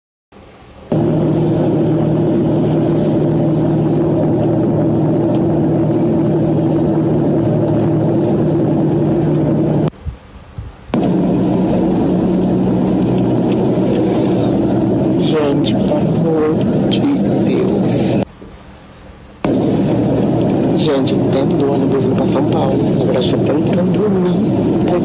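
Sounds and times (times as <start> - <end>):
bus engine droning: 0.4 - 25.0.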